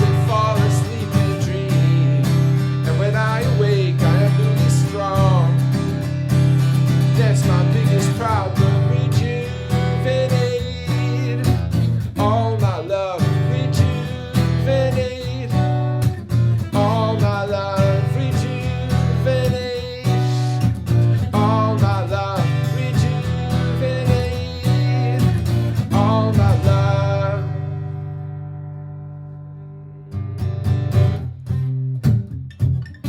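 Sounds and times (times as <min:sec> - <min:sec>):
strummed acoustic guitar chords: 0:00.0 - 0:33.0
single-note guitar lead: 0:25.9 - 0:33.0.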